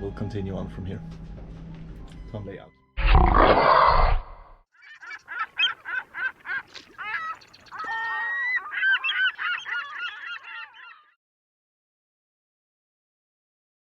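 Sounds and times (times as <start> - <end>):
seabird honking cries: 4.9 - 11.1.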